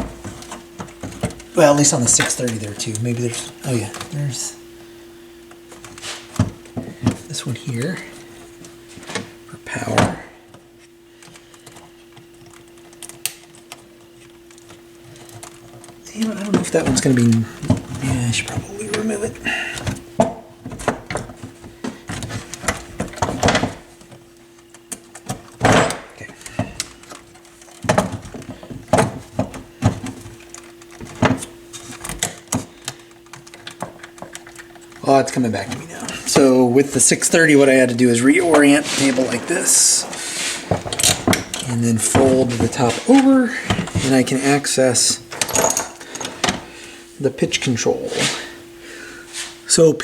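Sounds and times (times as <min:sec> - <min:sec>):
turntable parts clicking and knocking: 0:00.0 - 0:04.7, 0:05.4 - 0:46.7
faint steady hum: 0:00.0 - 0:50.0
small clicks and taps: 0:10.5 - 0:16.0.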